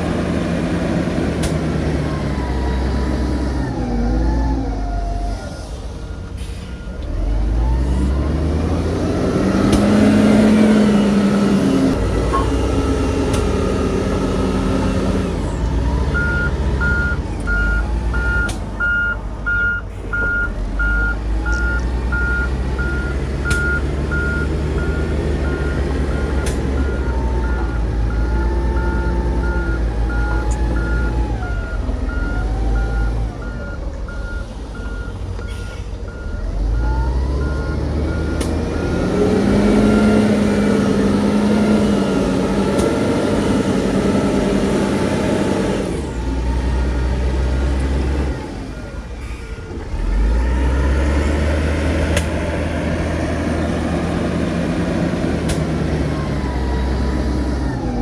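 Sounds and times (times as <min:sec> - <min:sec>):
diesel machinery engine running: 0:00.0 - 0:58.0
reversing alarm beeping: 0:09.3 - 0:42.4.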